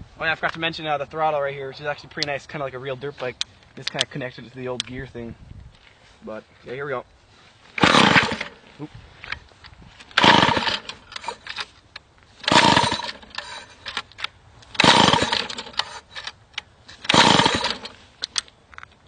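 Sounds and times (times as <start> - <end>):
chainsaw starter cord cranking: 7.8 - 8.7, 10.0 - 11.7, 12.4 - 18.5.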